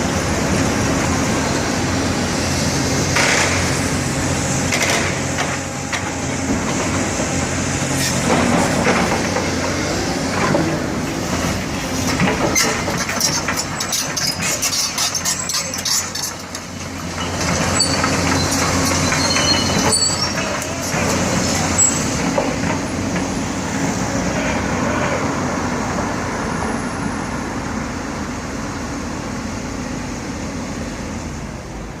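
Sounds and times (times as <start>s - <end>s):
diesel machinery engine drone: 0.0s - 32.0s
high metallic squeals: 17.7s - 20.8s, 21.8s - 22.2s.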